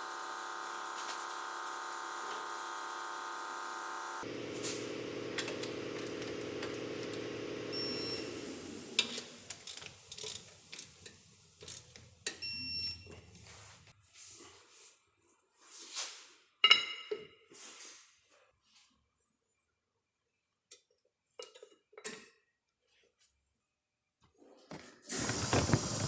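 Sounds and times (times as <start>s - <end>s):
power tool motor running: 0.0s - 9.6s, 25.1s - 26.0s.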